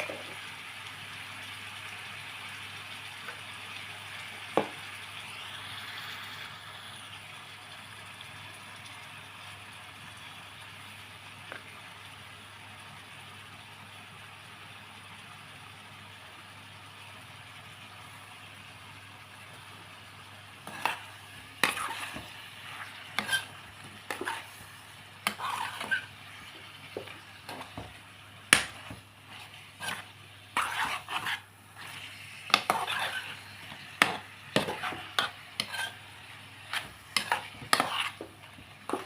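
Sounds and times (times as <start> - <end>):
food sizzling in a pan: 0.0 - 39.0
utensil scraping and knocking pan: 20.6 - 36.0, 36.7 - 39.0.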